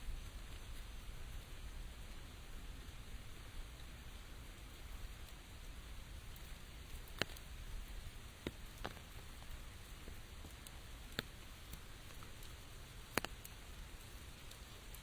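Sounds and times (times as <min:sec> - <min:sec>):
steady rain: 0:00.0 - 0:15.0
raindrops tapping: 0:06.2 - 0:15.0.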